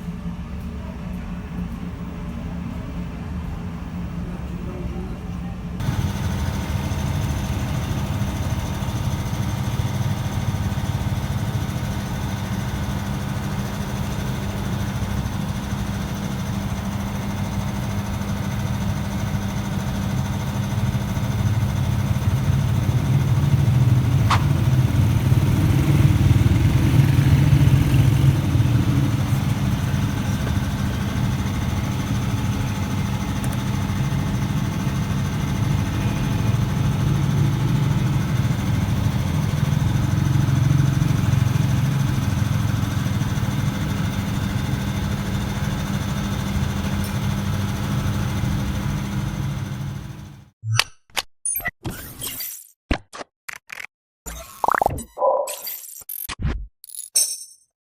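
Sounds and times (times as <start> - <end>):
old car engine idling: 5.8 - 50.4.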